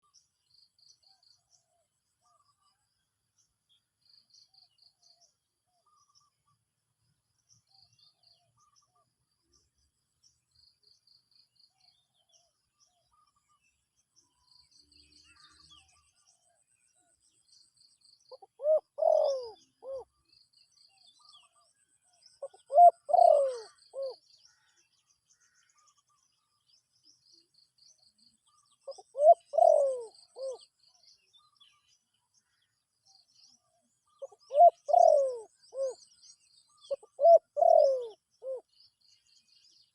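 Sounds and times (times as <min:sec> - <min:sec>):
faint high chirping: 0:07.4 - 0:39.9
dove cooing: 0:18.3 - 0:20.2, 0:22.4 - 0:24.2, 0:28.8 - 0:30.7, 0:34.1 - 0:36.0, 0:36.8 - 0:38.7.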